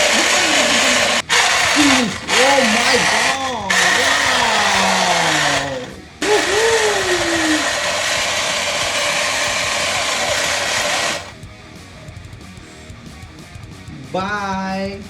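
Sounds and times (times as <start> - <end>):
toy gun motor whirring: 0.0 - 11.4.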